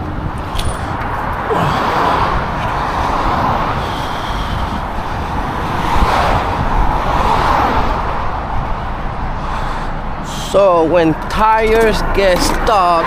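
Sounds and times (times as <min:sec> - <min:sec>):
cars passing on road: 0:00.0 - 0:13.0.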